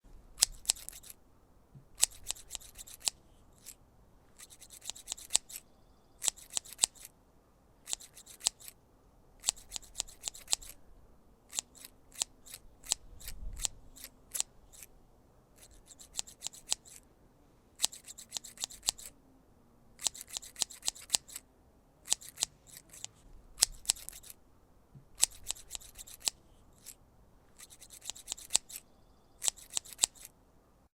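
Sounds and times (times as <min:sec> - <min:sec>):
grass clippers snipping: 0:00.4 - 0:01.2, 0:01.8 - 0:03.8, 0:11.5 - 0:14.9, 0:20.0 - 0:21.4, 0:22.1 - 0:24.4, 0:25.0 - 0:27.0, 0:27.6 - 0:28.8, 0:29.4 - 0:30.3.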